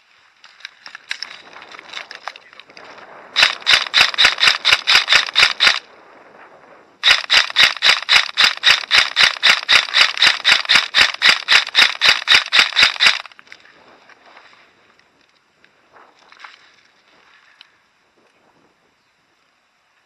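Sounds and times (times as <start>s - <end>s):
airsoft gun rapid firing: 3.4s - 5.8s, 7.0s - 13.3s.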